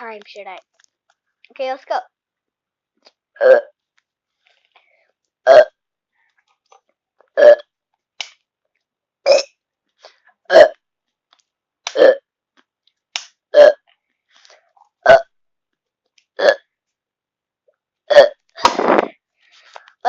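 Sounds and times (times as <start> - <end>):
person burping: 3.4 - 3.8, 5.4 - 5.8, 7.4 - 7.7, 9.3 - 9.5, 10.5 - 10.8, 11.9 - 12.2, 13.6 - 13.8, 15.0 - 15.3, 16.4 - 16.7, 18.1 - 19.1.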